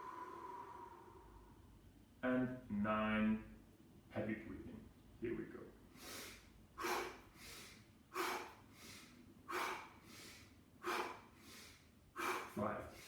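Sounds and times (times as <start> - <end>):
man breathing heavily: 0.0 - 1.6, 5.9 - 13.0.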